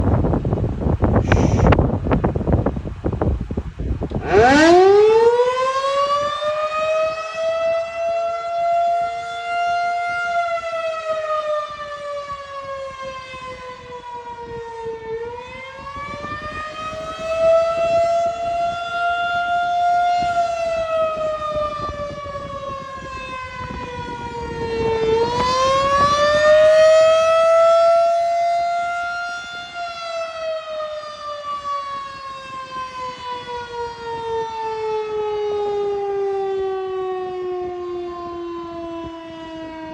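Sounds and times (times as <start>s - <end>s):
tornado warning siren wailing: 0.0s - 39.9s.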